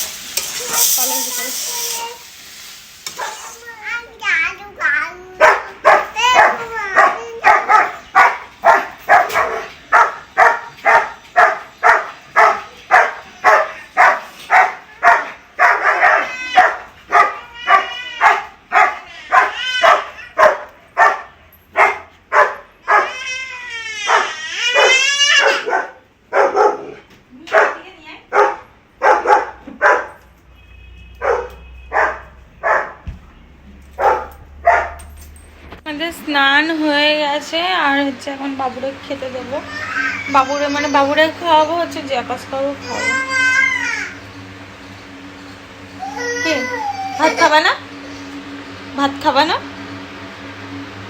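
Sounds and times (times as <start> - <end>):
dog barking: 3.1 - 3.5, 5.4 - 23.2, 24.1 - 30.2, 31.2 - 33.0, 34.0 - 35.2
dog whining: 3.1 - 3.6, 5.4 - 21.1, 21.8 - 23.3, 23.9 - 26.0, 45.9 - 47.7.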